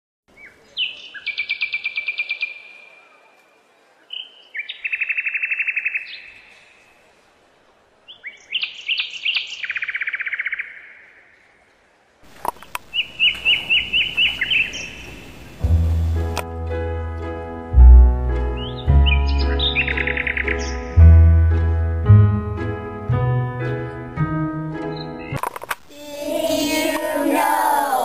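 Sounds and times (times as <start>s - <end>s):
background noise: 0.3s - 28.0s
songbird singing with trills: 0.4s - 3.1s, 4.1s - 6.4s, 8.1s - 11.0s, 12.9s - 15.2s, 18.6s - 21.0s
bird chirps: 12.9s - 15.6s, 18.6s - 21.0s.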